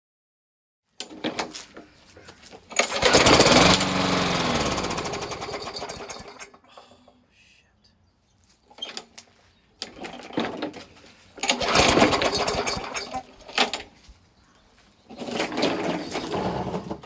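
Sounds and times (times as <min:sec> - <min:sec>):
lawn mower engine winding down: 0:02.6 - 0:06.6, 0:11.4 - 0:13.9, 0:15.1 - 0:17.0
engine knocks: 0:02.8 - 0:06.5, 0:11.4 - 0:13.3.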